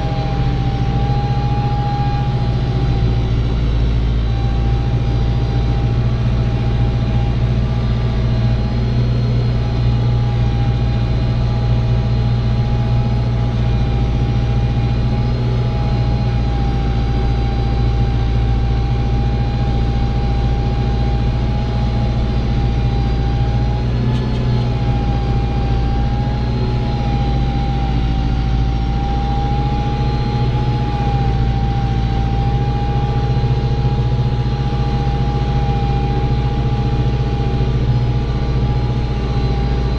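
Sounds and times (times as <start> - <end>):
high whine: 0.0 - 39.9
tractor engine drone: 0.0 - 39.9.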